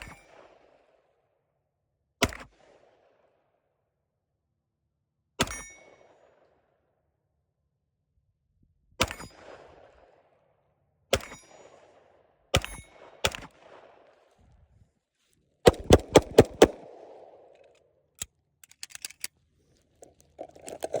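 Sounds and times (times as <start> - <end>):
pistol shots: 11.1 - 14.0, 15.7 - 17.6.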